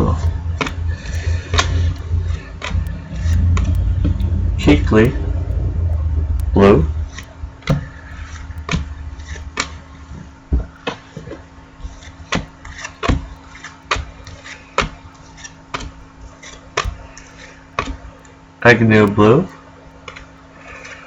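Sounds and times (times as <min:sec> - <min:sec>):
low rumble: 0:00.0 - 0:10.9.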